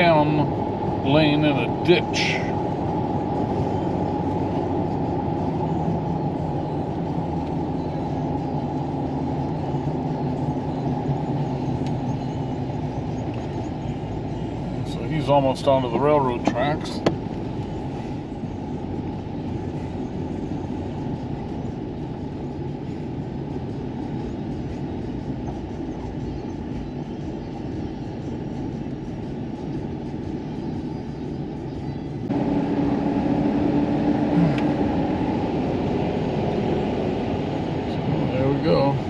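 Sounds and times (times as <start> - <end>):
truck road and engine noise: 0.0 - 39.0
steady hum: 15.9 - 39.0.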